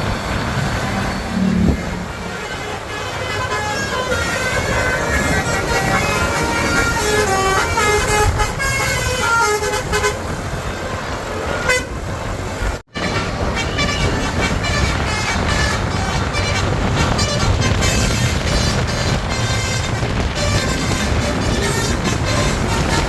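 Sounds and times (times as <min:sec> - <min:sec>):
engine and road noise: 0:00.0 - 0:23.0
multi-tone bus horn melody: 0:00.0 - 0:23.0.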